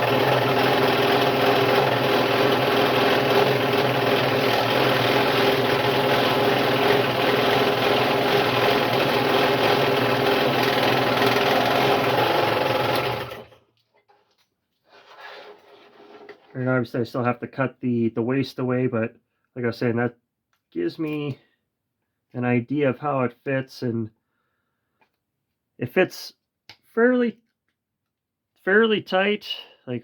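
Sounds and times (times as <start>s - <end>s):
scroll saw cutting wood: 0.0s - 13.6s.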